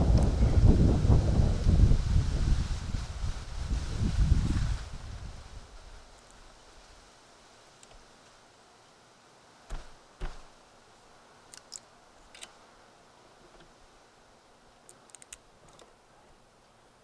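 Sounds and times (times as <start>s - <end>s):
knocks on metal casing: 9.7s - 10.5s
hand tools clicking and snipping: 11.5s - 12.6s.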